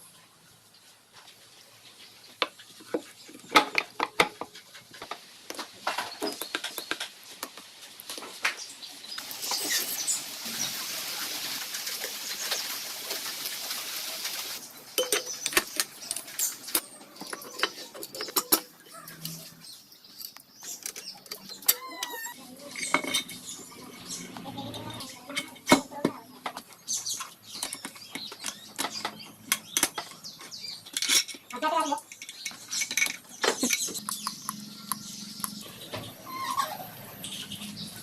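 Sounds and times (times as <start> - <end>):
steady hiss: 9.2 - 15.0
metal parts and tools clinking: 15.0 - 23.6, 27.5 - 34.6.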